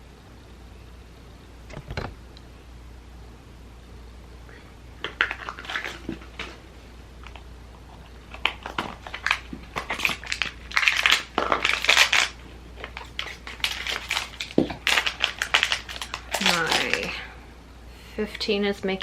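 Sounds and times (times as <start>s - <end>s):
cardboard box packaging crinkling: 5.0s - 17.2s.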